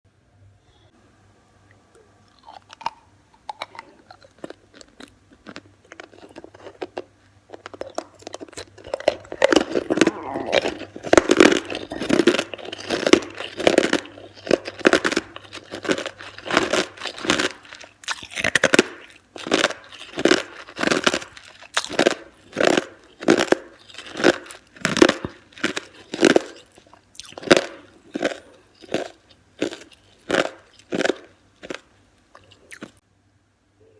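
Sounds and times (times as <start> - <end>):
ice being chewed: 1.9 - 33.0.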